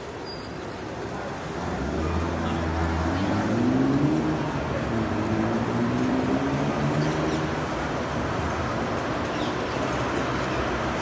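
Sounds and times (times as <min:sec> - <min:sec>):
road noise: 0:00.0 - 0:11.0
passing vehicle engine hum: 0:01.6 - 0:09.2.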